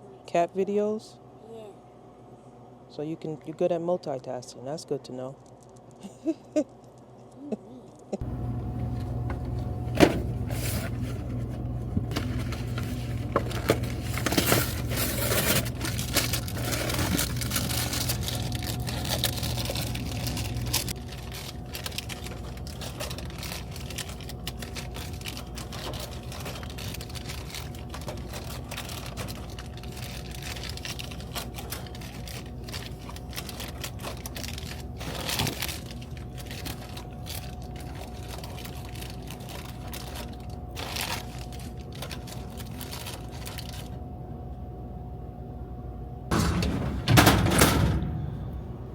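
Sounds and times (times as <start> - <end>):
steady low hum: 0.0 - 48.9
snack packages crinkling: 12.1 - 44.0.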